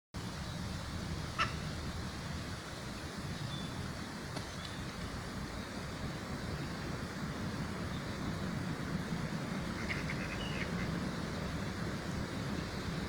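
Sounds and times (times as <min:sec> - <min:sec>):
duck quacking: 0:01.4 - 0:01.7.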